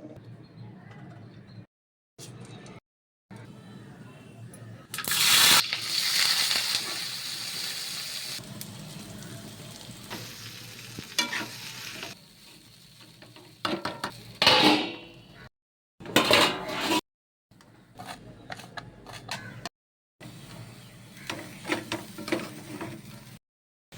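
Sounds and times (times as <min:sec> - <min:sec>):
food sizzling in hot oil: 0:05.0 - 0:14.4
spoon scraping a pan: 0:11.1 - 0:12.2, 0:16.2 - 0:17.0, 0:21.2 - 0:23.2.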